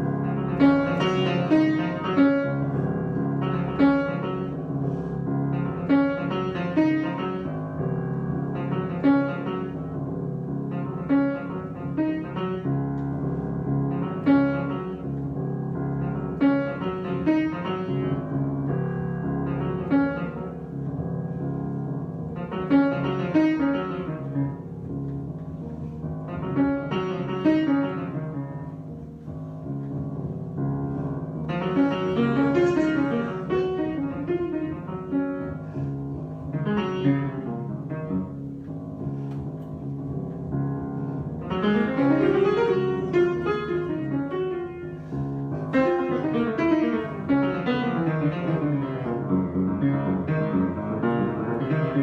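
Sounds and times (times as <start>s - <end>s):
improvised piano music: 0.0s - 52.0s.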